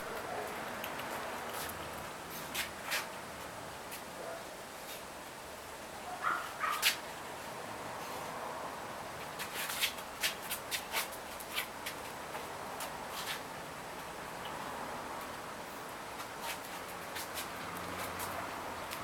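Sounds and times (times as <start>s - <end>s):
puppy yipping: 6.2s - 7.0s.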